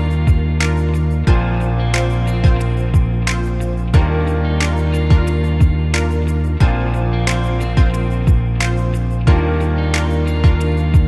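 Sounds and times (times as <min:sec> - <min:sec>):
sustained music chords: 0:00.0 - 0:11.0
deep falling bass thumps: 0:05.0 - 0:06.0.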